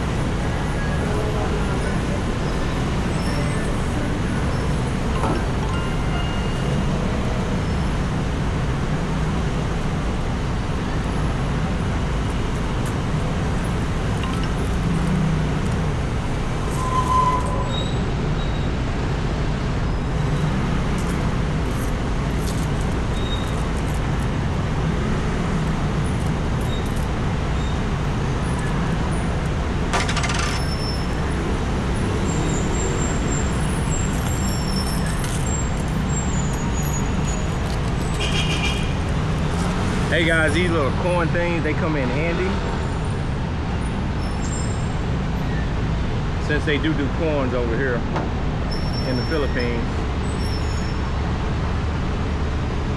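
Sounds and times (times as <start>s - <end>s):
street traffic rumble: 0.0s - 52.9s
brief tone: 5.2s - 6.8s, 16.7s - 18.7s.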